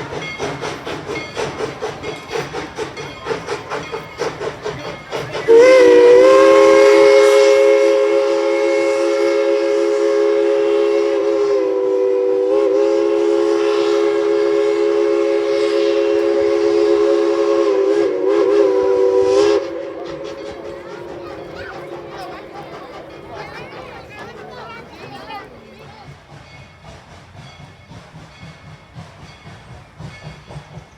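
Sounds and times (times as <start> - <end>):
steam locomotive chuffing: 0.0 - 30.9
steam whistle blast: 5.5 - 20.9.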